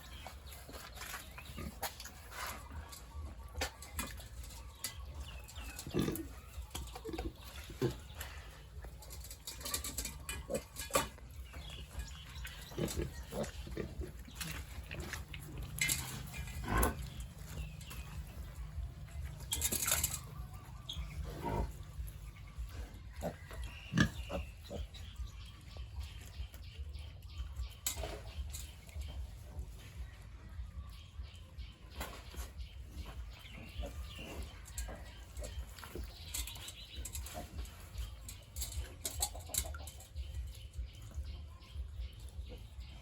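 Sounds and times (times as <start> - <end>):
pigs grunting: 4.7 - 25.4, 33.4 - 38.2.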